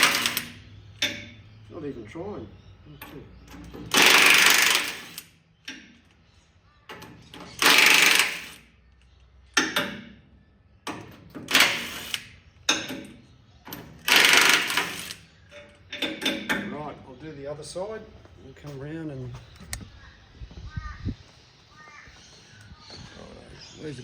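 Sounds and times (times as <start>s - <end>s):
ratchet wrench spinning nuts: 0.0s - 0.6s, 3.9s - 5.2s, 7.6s - 8.6s, 14.0s - 15.2s
sharp metal clicks: 0.0s - 1.4s, 3.0s - 6.2s, 6.9s - 10.1s, 10.8s - 16.8s.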